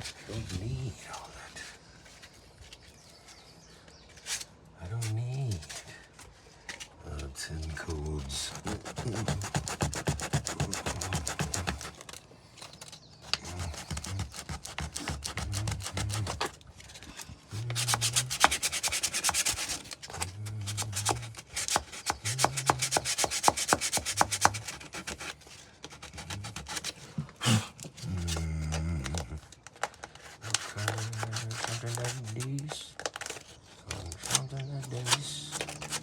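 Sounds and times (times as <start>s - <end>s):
sandpaper rubbing on filler: 8.4s - 12.0s, 13.4s - 16.5s, 17.6s - 20.0s, 20.6s - 27.0s, 30.2s - 32.6s, 34.0s - 36.0s.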